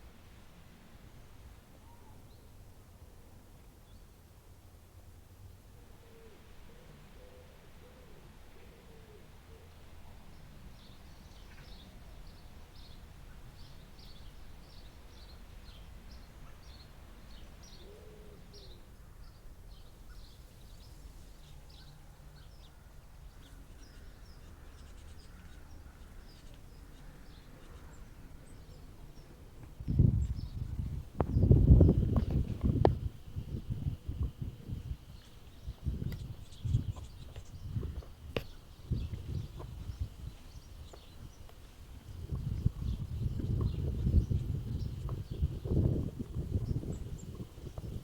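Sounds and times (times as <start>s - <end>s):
birds chirping: 10.3s - 48.0s.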